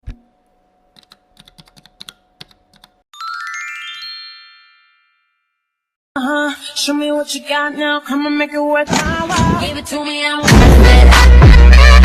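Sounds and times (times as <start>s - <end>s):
sparkle chime sound effect: 3.2s - 5.8s.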